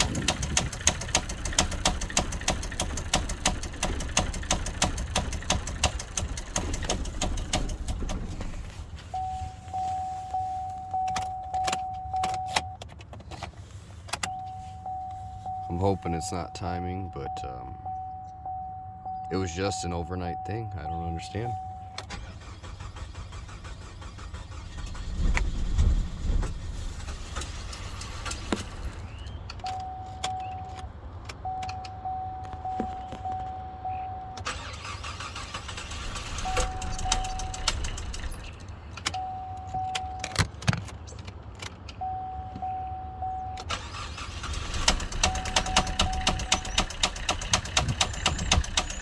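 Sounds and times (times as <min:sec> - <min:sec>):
car engine cranking: 0:00.0 - 0:42.7, 0:43.4 - 0:49.0
steady electronic beep: 0:09.1 - 0:12.8, 0:14.3 - 0:22.0.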